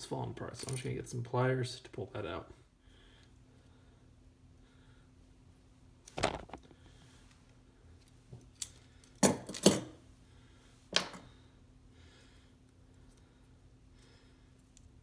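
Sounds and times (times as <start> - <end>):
metal hand tools clinking: 8.6 - 9.9.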